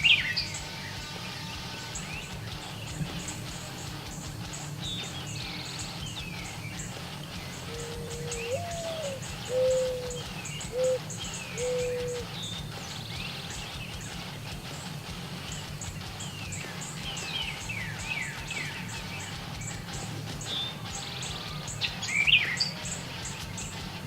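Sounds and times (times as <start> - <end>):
songbirds chirping: 0.0 - 24.0
insect-like ticking: 1.8 - 24.0
dove cooing: 6.9 - 12.4.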